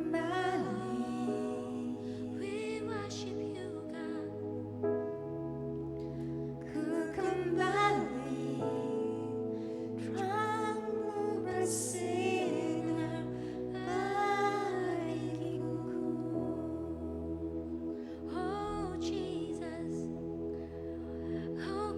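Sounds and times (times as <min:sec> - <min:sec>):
person singing: 0:00.0 - 0:04.4, 0:06.6 - 0:17.6, 0:18.2 - 0:20.3.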